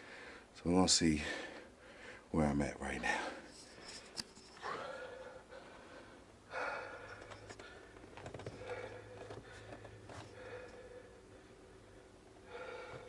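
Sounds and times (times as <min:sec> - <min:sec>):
man breathing heavily: 0:00.0 - 0:00.5, 0:01.2 - 0:02.3, 0:04.6 - 0:13.0.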